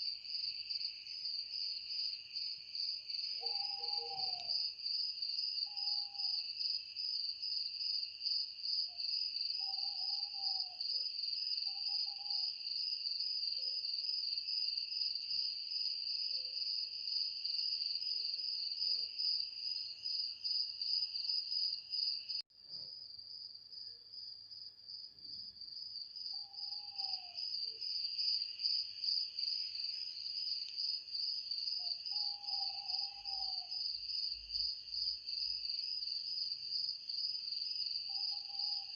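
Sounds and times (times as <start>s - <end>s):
crickets chirring: 0.3s - 12.9s, 26.3s - 38.9s.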